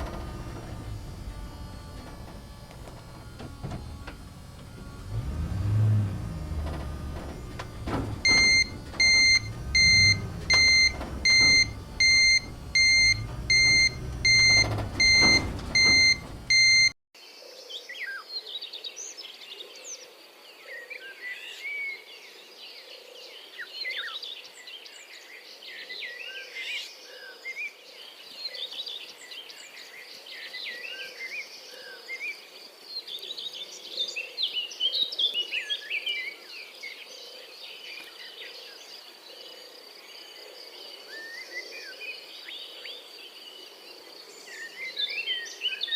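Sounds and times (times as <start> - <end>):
small motor running: 0.0 - 16.9
electronic beeper: 8.2 - 17.0.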